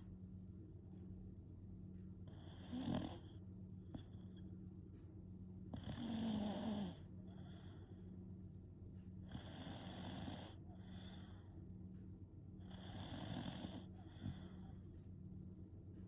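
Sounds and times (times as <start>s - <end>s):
dog snoring: 2.2s - 4.3s, 5.7s - 8.0s, 9.2s - 11.5s, 12.6s - 14.8s.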